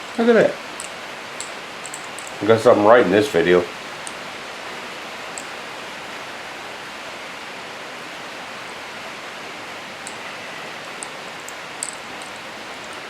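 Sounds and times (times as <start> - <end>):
steady hiss: 0.0 - 13.0
faint light clicks: 0.8 - 2.4.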